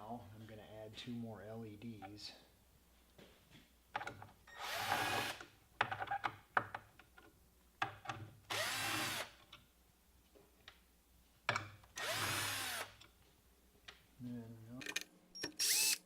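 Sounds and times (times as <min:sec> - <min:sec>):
cordless drill running: 0:08.5 - 0:09.3, 0:12.0 - 0:12.9, 0:15.5 - 0:16.0.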